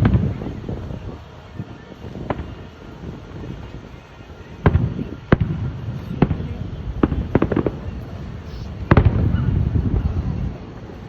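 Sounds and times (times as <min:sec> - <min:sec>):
fireworks exploding: 0:00.0 - 0:11.0.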